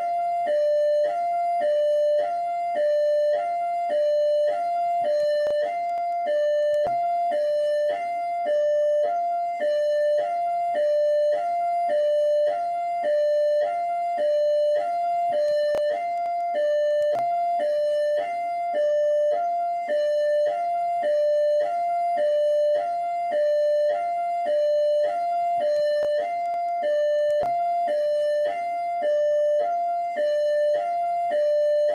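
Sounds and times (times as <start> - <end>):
hi-lo police siren: 0.0 - 31.9.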